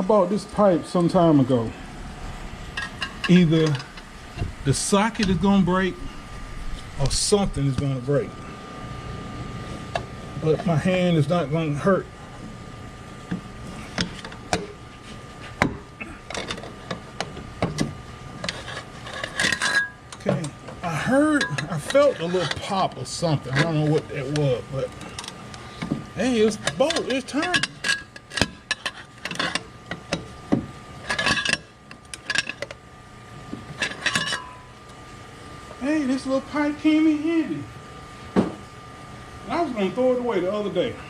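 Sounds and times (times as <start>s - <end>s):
metal tools clinking and rattling: 21.3s - 22.7s, 26.4s - 29.6s, 33.8s - 34.7s.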